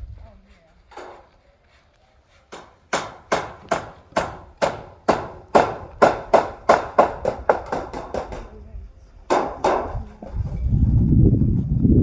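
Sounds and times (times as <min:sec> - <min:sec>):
hammer blows: 0:02.4 - 0:08.5.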